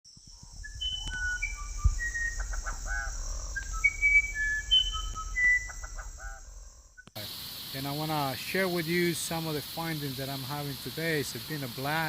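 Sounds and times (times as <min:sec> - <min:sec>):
high-pitched insect drone: 0:00.1 - 0:12.0
birds whistling: 0:00.2 - 0:07.1
short bird chirps: 0:00.2 - 0:07.1.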